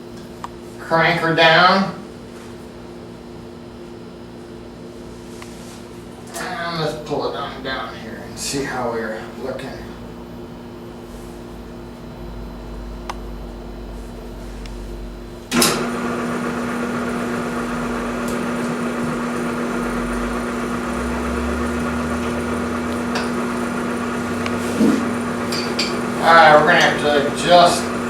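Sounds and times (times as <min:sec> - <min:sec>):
faint low hum: 0:06.4 - 0:15.6
electric motor humming: 0:06.5 - 0:28.0
electric motor switch click: 0:12.3 - 0:13.6, 0:14.5 - 0:26.0.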